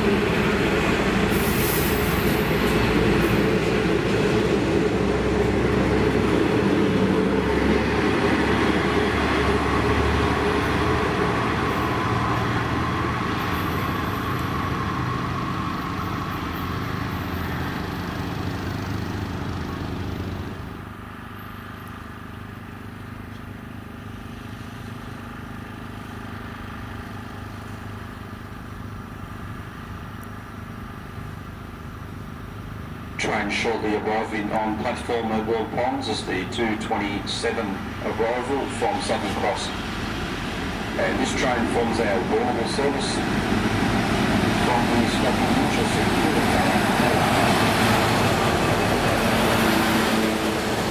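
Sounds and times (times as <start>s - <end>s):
train wheels on rails: 0.0s - 20.9s, 32.3s - 50.9s
diesel locomotive engine: 0.0s - 50.9s.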